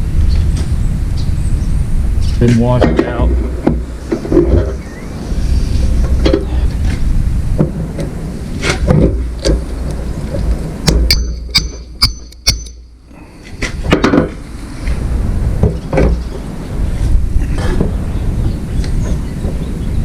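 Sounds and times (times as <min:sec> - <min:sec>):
steady low rumble: 0:00.0 - 0:20.0
metal parts knocking and clinking: 0:10.9 - 0:12.9
sharp ringing metal clinks: 0:11.1 - 0:13.0.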